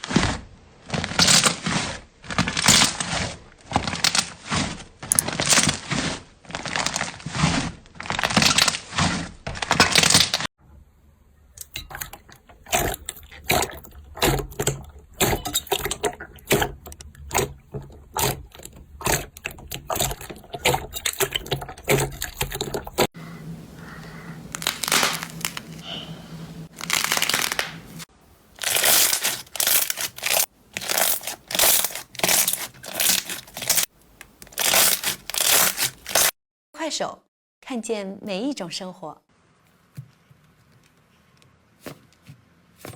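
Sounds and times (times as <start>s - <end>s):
slime crackling and popping: 24.5s - 25.8s, 26.7s - 28.0s, 28.6s - 36.3s.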